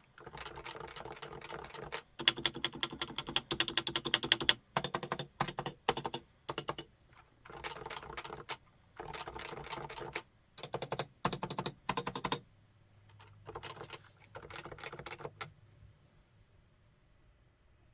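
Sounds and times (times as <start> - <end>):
keyboard typing: 0.2 - 6.9, 7.5 - 12.4, 13.1 - 15.5.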